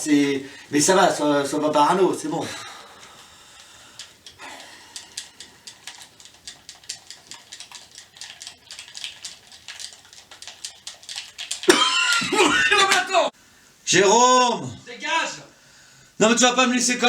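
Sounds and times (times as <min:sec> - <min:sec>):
person breathy puffs: 0:02.4 - 0:06.1.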